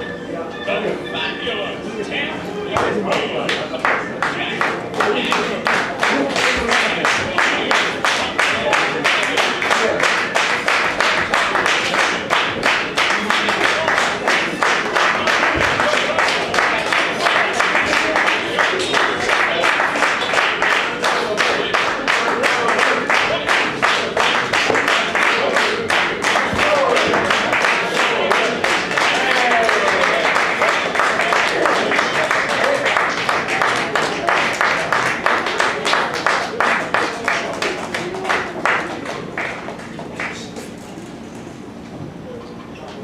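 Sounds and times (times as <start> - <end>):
audience clapping along: 2.7 - 40.7.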